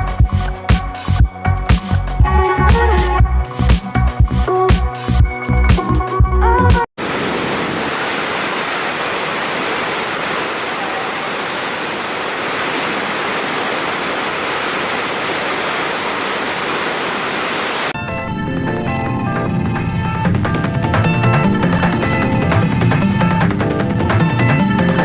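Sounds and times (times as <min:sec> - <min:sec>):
music: 0:00.0 - 0:06.9, 0:18.0 - 0:25.0
waterfall rushing: 0:07.0 - 0:18.0.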